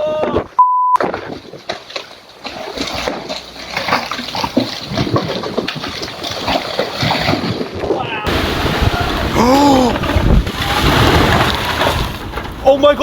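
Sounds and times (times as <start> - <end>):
strong wind gusting: 7.7 - 12.6
heavy rain splashing: 8.3 - 12.6.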